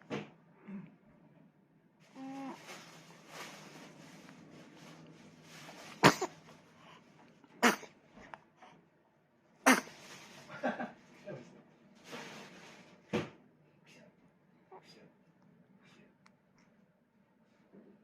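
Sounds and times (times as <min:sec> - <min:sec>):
baby vocal sound: 0:02.2 - 0:02.6
baby sneezing: 0:05.9 - 0:06.4, 0:07.6 - 0:07.9, 0:09.6 - 0:10.0.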